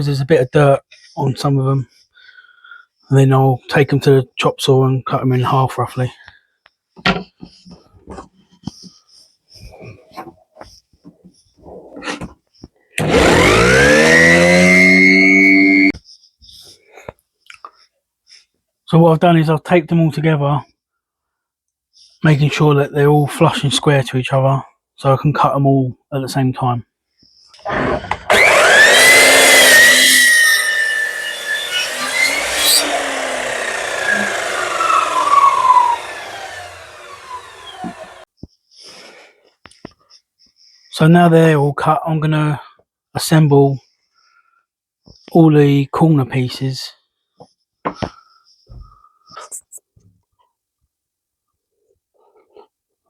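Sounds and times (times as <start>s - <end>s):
chop saw cutting wood: 13.0s - 16.0s, 27.6s - 38.3s
power tool motor whine: 13.0s - 16.0s, 27.6s - 38.3s.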